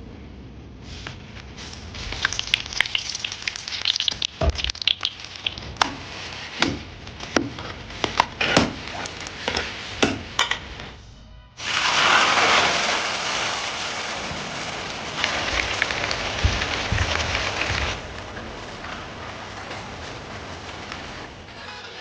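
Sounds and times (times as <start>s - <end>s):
crackling hiss of cooking: 0.8s - 10.9s, 11.6s - 21.5s.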